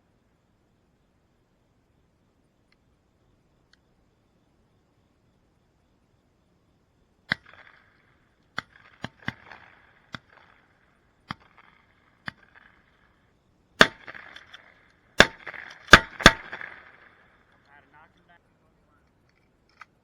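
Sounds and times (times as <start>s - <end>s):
distant shotgun shots: 7.3s - 13.2s, 13.8s - 17.7s
loud close shotgun shots: 8.6s - 12.9s, 13.8s - 17.4s.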